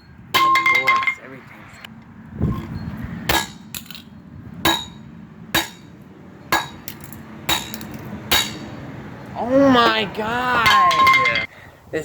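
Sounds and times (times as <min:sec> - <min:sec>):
clinking ring: 0:00.4 - 0:01.3, 0:10.7 - 0:11.5.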